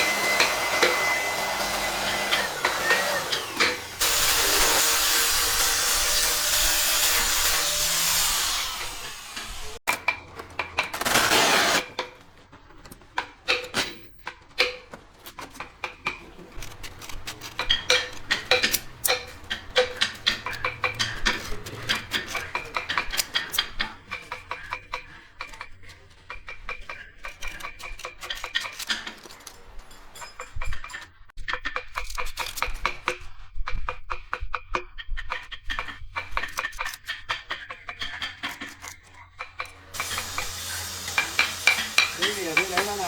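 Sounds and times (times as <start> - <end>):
woodworking power tool: 0.0 - 12.1, 15.9 - 25.0, 39.7 - 43.0
knocks and scrapes on wood: 7.0 - 29.5.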